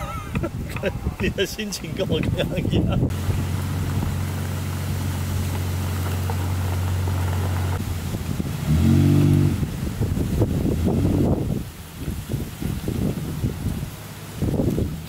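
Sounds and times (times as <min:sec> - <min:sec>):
engine humming and revving: 0:03.0 - 0:15.0.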